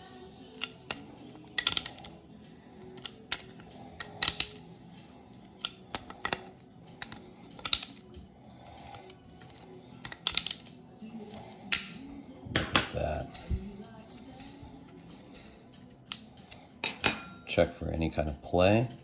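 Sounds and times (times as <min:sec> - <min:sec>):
hand tools clicking on metal: 0:00.6 - 0:02.2, 0:03.0 - 0:04.6, 0:05.5 - 0:08.2, 0:09.1 - 0:10.8.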